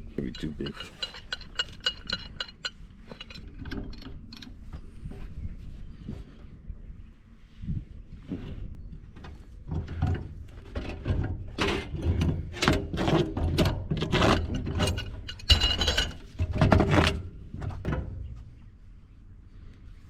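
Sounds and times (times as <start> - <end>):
metallic clank: 0.2 - 4.5, 13.6 - 17.2
wrench clicking and scraping: 0.2 - 4.6.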